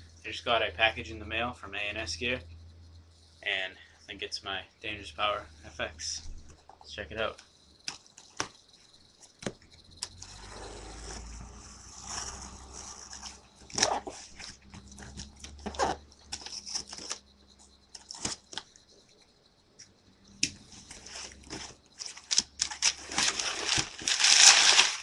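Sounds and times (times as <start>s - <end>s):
cardboard ripping and rustling: 21.0s - 25.0s.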